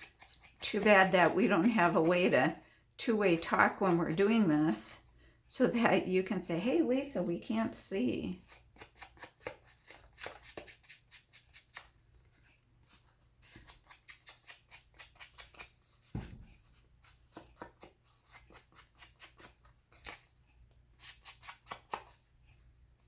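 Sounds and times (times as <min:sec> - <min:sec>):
soft thump: 0:16.1 - 0:16.6.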